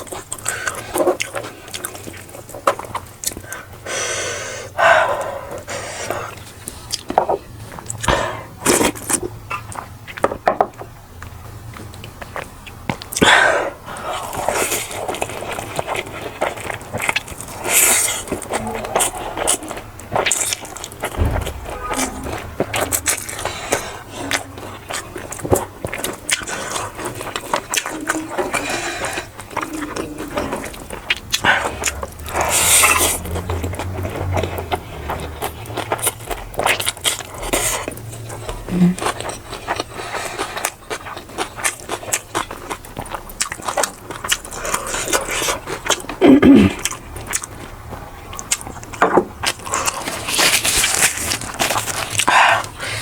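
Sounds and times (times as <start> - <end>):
chewing and biting: 0.0 - 3.8, 14.0 - 21.7, 22.8 - 53.0.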